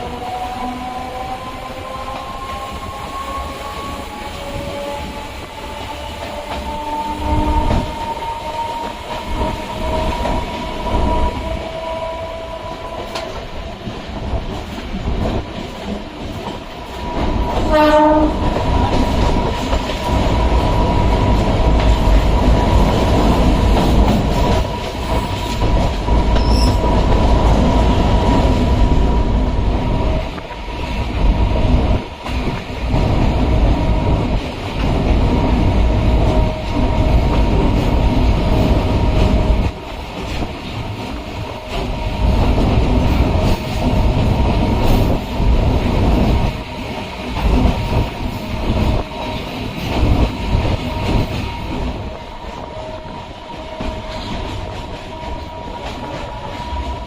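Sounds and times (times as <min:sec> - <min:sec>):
electric train whine: 0:00.0 - 0:57.0
train horn blast: 0:17.6 - 0:18.6.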